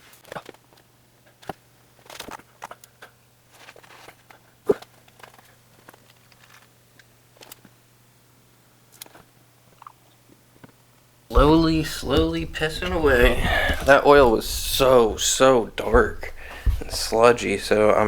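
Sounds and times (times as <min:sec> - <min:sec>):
light clicks and knocks: 0:11.3 - 0:18.0.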